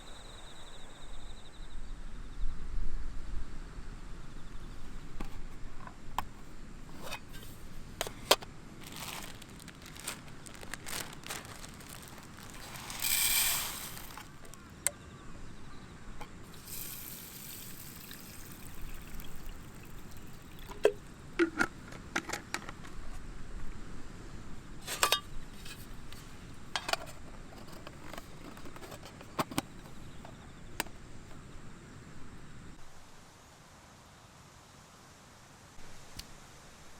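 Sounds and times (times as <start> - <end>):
liquid pouring: 16.5 - 21.0.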